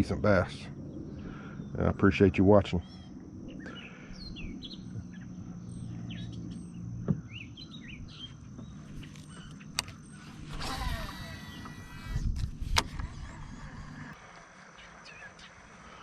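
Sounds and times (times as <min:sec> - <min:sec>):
birds chirping: 0:00.0 - 0:16.0
faint low hum: 0:00.0 - 0:16.0
sharp clicks: 0:09.0 - 0:13.2.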